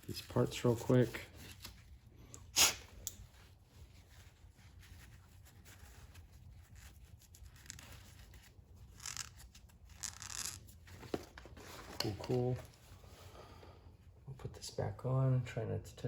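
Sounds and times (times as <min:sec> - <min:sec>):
towel rubbing and rustling: 0:03.2 - 0:13.4.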